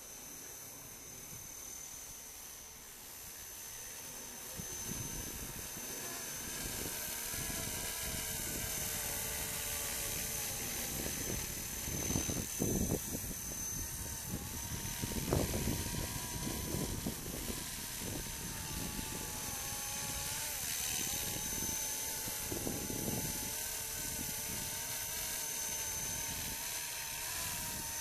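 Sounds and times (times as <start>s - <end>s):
rc helicopter rotor and motor whine: 0.0s - 28.0s
wind buffeting microphone: 6.6s - 20.4s, 21.0s - 24.8s.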